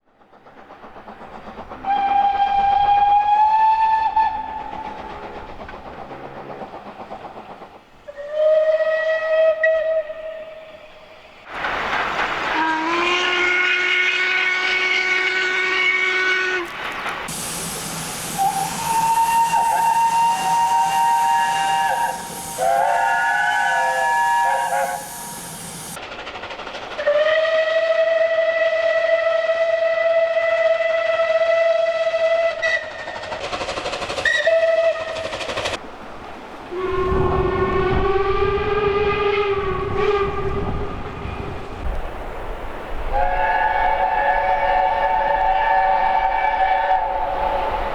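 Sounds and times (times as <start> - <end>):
steam locomotive whistles: 0.8 - 26.0, 27.0 - 35.8, 36.7 - 41.6, 43.0 - 47.9
hiss of escaping steam: 11.1 - 27.3.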